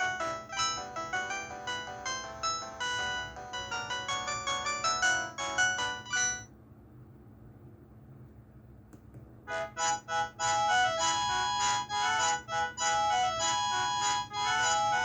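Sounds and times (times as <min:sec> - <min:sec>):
phone ringtone melody: 0:00.0 - 0:06.5, 0:09.5 - 0:15.0.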